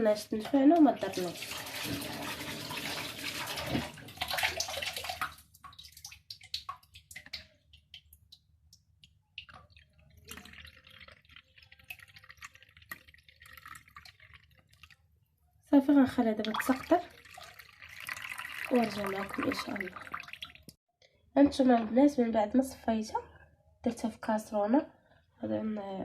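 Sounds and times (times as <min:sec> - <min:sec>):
water dripping: 0:00.0 - 0:15.1, 0:16.1 - 0:20.8
water sloshing: 0:00.8 - 0:15.0, 0:16.2 - 0:20.8.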